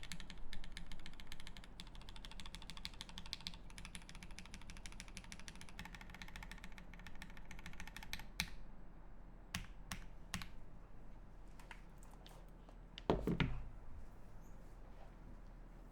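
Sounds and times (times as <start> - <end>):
mechanical keyboard typing: 0.0 - 8.6.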